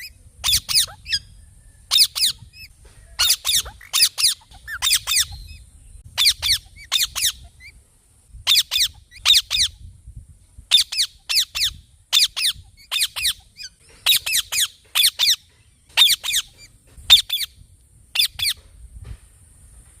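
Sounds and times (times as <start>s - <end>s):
parrot screeching: 0.0s - 1.2s, 1.9s - 5.4s, 6.2s - 7.7s.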